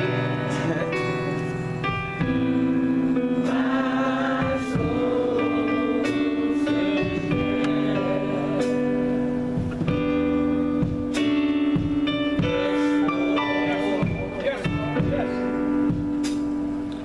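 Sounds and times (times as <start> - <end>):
gospel singing with held chords: 0.0 - 17.0.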